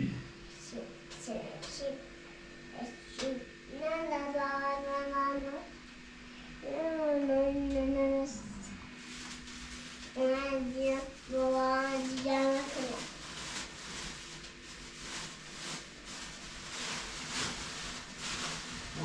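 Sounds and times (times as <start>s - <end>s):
child singing: 2.8s - 5.7s, 6.7s - 8.4s, 10.2s - 13.0s.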